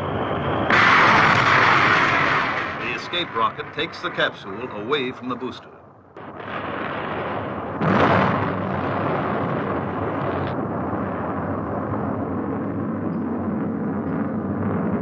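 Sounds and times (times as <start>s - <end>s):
loud rocket blast: 0.0s - 4.9s, 6.2s - 15.0s
rocket exhaust rushing: 0.0s - 4.9s, 6.2s - 15.0s.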